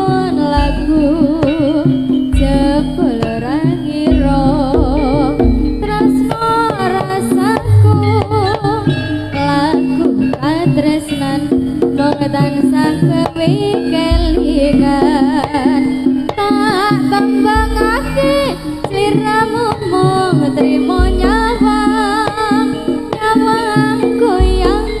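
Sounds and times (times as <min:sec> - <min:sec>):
gamelan ensemble music: 0:00.0 - 0:25.0
deep booming strokes: 0:07.6 - 0:09.2.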